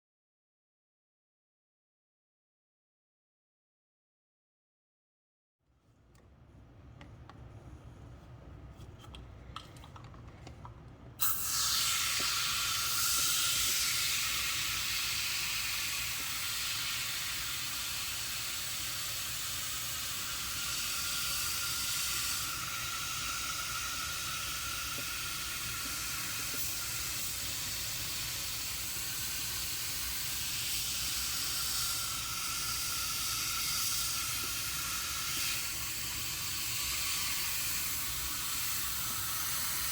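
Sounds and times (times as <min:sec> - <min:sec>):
aerosol can spraying hiss: 0:11.2 - 0:39.9.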